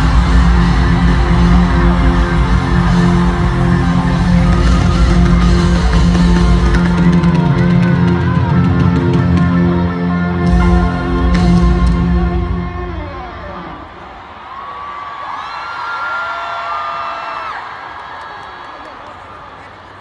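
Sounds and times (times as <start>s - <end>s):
deep bass: 0.0s - 13.5s
live pop-rock band: 0.0s - 13.6s.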